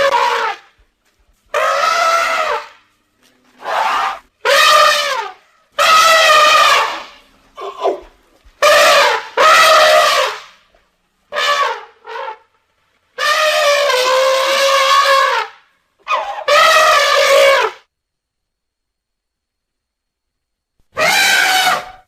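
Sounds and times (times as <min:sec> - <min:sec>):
elephant trumpeting: 0:00.0 - 0:00.7, 0:01.5 - 0:02.8, 0:03.6 - 0:10.6, 0:11.3 - 0:12.6, 0:13.2 - 0:17.8, 0:20.9 - 0:22.0.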